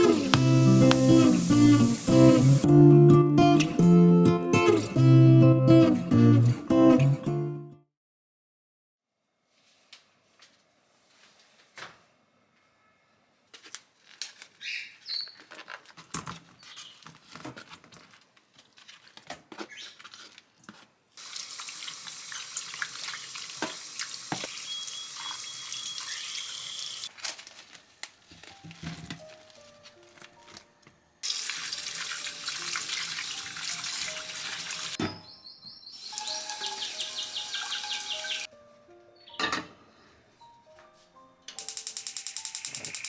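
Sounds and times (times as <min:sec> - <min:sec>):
tap water running into sink: 0:00.0 - 0:02.6, 0:21.2 - 0:27.1, 0:31.2 - 0:35.0, 0:36.0 - 0:38.5.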